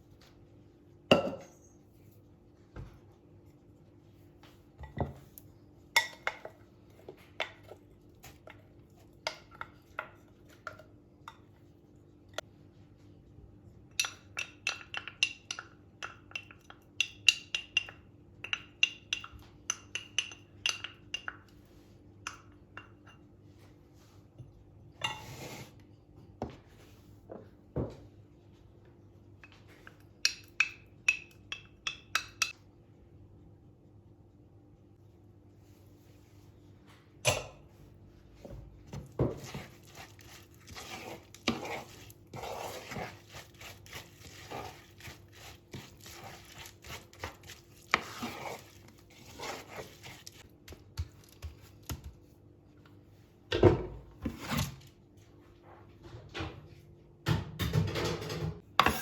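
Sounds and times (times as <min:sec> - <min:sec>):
utensil scraping: 0:39.3 - 0:50.5.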